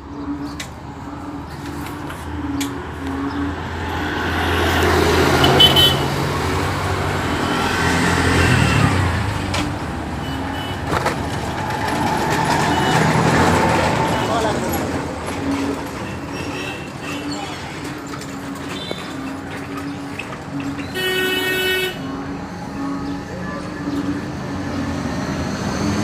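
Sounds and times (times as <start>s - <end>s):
vehicle engine passing by: 0.2s - 10.2s, 10.8s - 16.0s.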